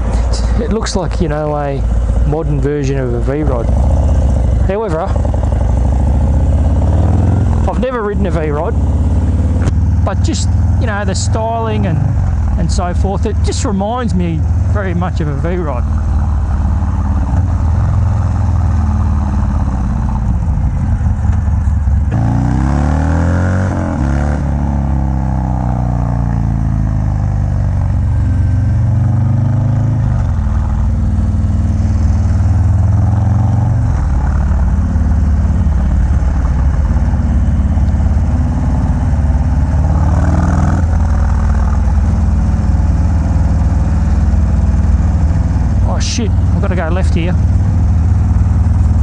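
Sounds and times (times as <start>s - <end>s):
loud motorcycle exhaust: 1.8s - 49.0s.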